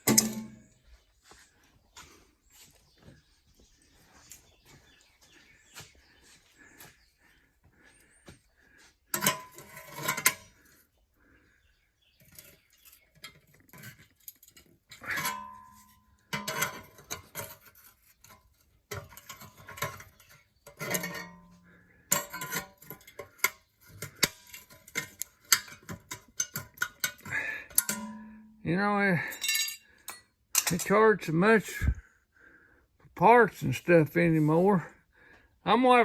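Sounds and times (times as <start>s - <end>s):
metal tools clinking: 9.1s - 10.6s, 12.2s - 28.6s, 29.2s - 30.9s.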